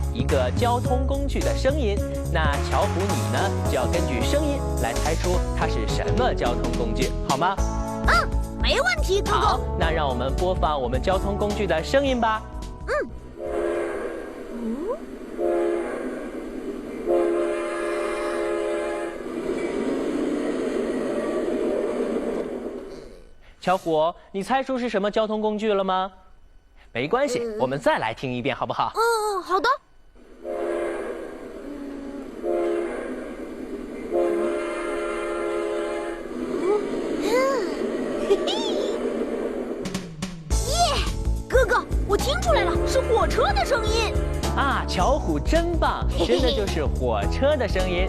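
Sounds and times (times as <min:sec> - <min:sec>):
train rumbling: 0:00.0 - 0:23.9, 0:30.0 - 0:48.0
train horn blasts: 0:13.4 - 0:14.5, 0:15.4 - 0:16.3, 0:17.0 - 0:19.3, 0:30.3 - 0:33.4, 0:34.0 - 0:36.4, 0:42.6 - 0:43.4.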